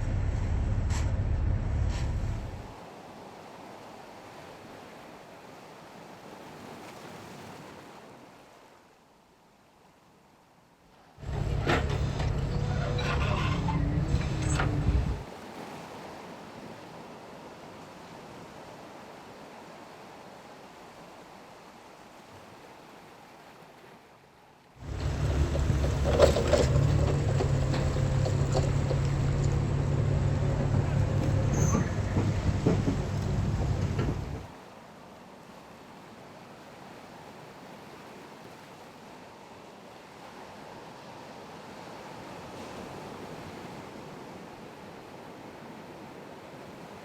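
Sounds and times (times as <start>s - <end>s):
boat engine running: 0.0s - 2.7s, 11.2s - 15.2s, 24.8s - 34.5s
wind: 0.0s - 47.0s
knocks and clatters: 11.2s - 15.2s, 24.8s - 34.5s
sea rushing: 24.8s - 47.0s.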